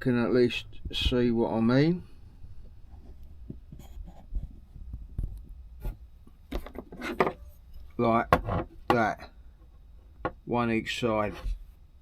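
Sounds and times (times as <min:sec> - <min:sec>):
low background rumble: 0:00.0 - 0:06.3
objects knocking and scraping: 0:03.0 - 0:07.5, 0:08.3 - 0:10.4.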